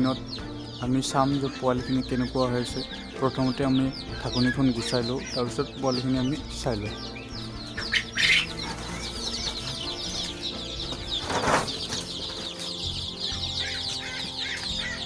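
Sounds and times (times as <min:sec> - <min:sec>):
chicks peeping: 0:00.0 - 0:15.0.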